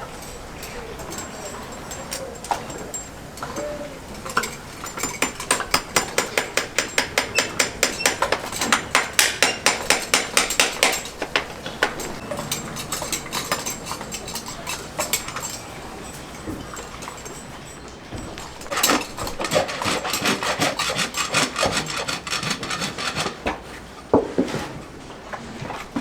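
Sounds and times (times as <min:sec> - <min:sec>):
hammer tapping: 0:04.3 - 0:12.2.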